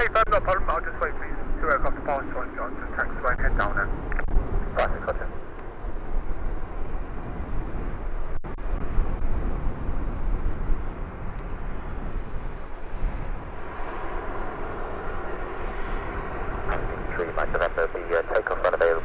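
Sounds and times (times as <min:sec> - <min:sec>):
aircraft engines running: 0:00.0 - 0:19.0
gusty wind on microphone: 0:00.0 - 0:19.0.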